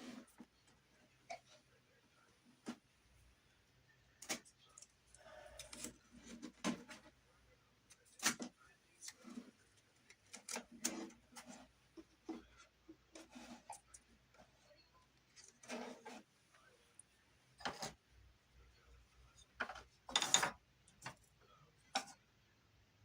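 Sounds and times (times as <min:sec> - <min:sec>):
rubbing or scraping: 0:00.0 - 0:00.5, 0:10.6 - 0:14.6, 0:15.5 - 0:16.4.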